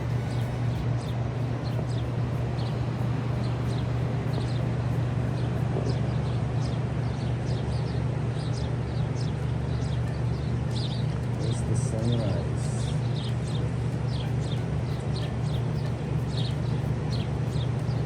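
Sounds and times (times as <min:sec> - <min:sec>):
surf hissing: 0:00.0 - 0:05.9
low rumble: 0:00.0 - 0:07.2
small birds chirping: 0:00.0 - 0:18.0.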